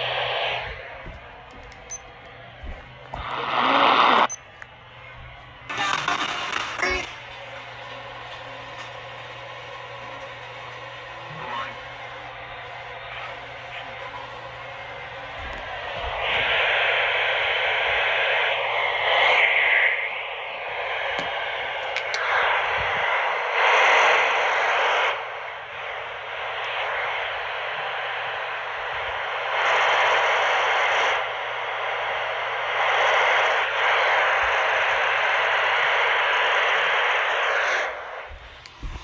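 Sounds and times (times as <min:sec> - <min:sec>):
faint low hum: 0:00.0 - 0:18.8
radio static hiss: 0:00.0 - 0:39.0.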